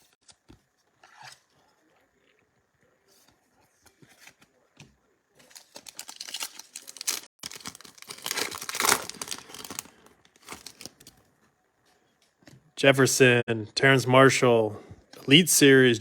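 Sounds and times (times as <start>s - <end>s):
plastic wrapper tearing and crinkling: 5.4s - 11.2s.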